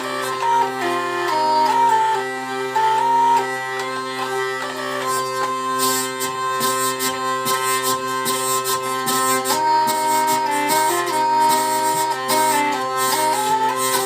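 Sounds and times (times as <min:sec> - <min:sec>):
drone instrument melody: 0:00.0 - 0:14.0
rhythmic rasping buzz: 0:00.0 - 0:14.0.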